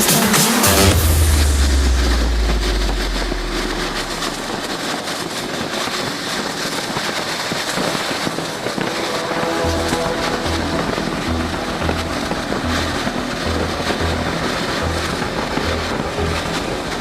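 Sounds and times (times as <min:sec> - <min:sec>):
deep low tone: 0:00.9 - 0:04.7, 0:08.9 - 0:16.8.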